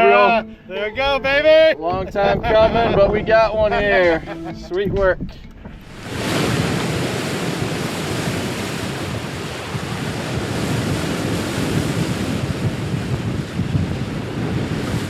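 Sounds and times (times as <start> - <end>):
wind buffeting microphone: 0.0 - 15.0
ocean waves: 5.4 - 15.0.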